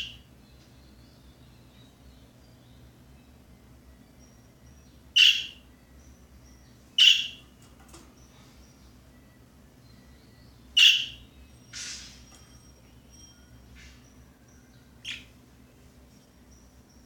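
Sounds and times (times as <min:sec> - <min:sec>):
budgerigar raspy calls: 0:00.0 - 0:00.2, 0:05.2 - 0:05.6, 0:07.0 - 0:07.4, 0:10.8 - 0:11.2.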